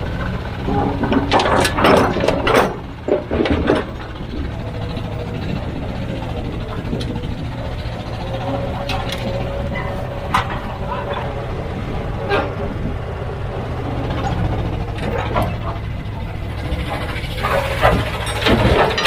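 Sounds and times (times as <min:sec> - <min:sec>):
heavy diesel machinery running: 0:00.0 - 0:19.0
sharp metal clanks: 0:16.7 - 0:19.0.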